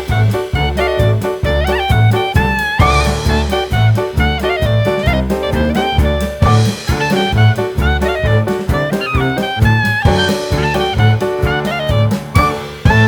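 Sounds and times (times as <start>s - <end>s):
jazz music with horn: 0.0s - 13.0s.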